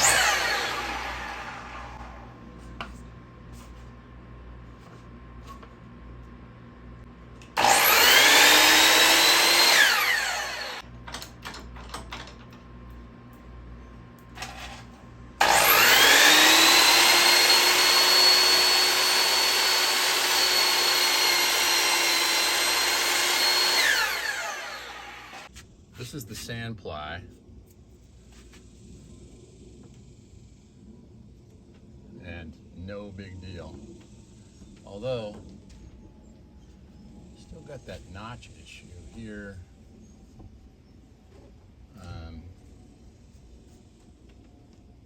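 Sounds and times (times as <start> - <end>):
electric saw cutting wood: 0.0 - 2.4, 7.4 - 10.9, 14.4 - 14.8, 15.4 - 25.5.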